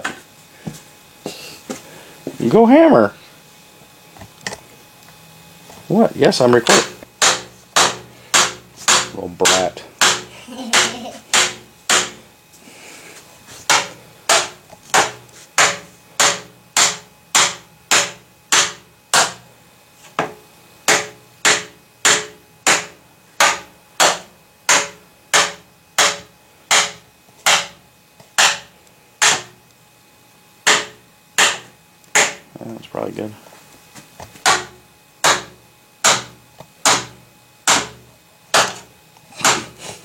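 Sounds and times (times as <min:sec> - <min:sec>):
hammer knocking on plastic pipes: 0:06.7 - 0:12.2.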